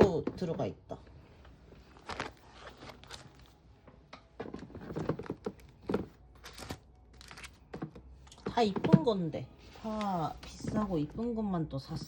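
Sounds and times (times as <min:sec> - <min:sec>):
sticker packets knocking and rustling: 0:04.3 - 0:09.0.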